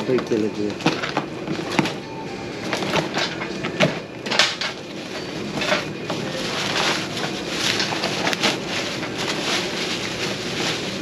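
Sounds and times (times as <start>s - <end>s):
packaging rustling: 4.7s - 11.0s.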